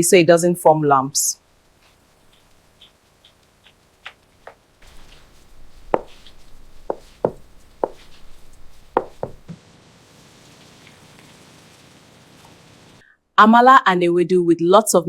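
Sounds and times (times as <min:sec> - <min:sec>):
utensil scraping thick dough: 0:04.8 - 0:09.5
utensil knocking against pot: 0:04.9 - 0:09.5.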